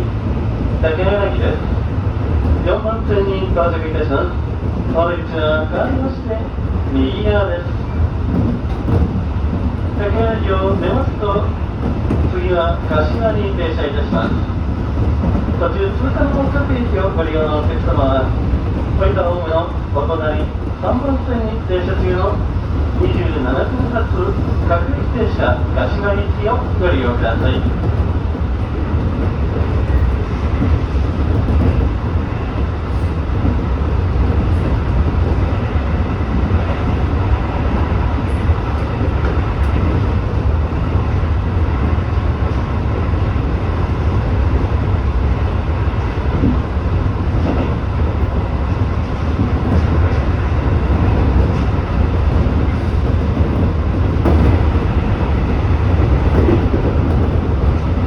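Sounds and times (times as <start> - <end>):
train wheels rumbling on rails: 0.0 - 58.0.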